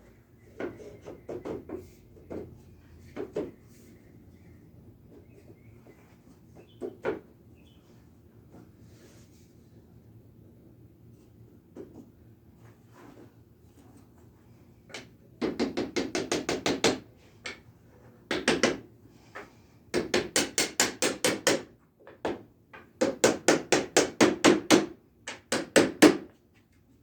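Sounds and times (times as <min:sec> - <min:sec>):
hammer tapping on wood: 0:18.3 - 0:18.8.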